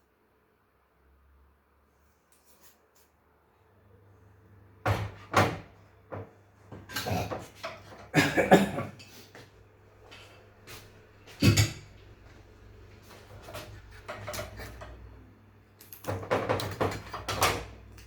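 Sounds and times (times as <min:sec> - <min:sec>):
knocks and clatters: 0:16.0 - 0:17.8.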